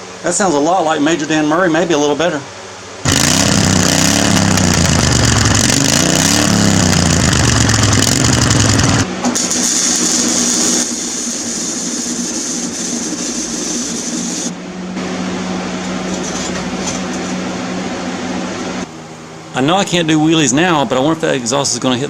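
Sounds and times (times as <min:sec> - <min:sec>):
mower engine revving: 0:03.0 - 0:10.9.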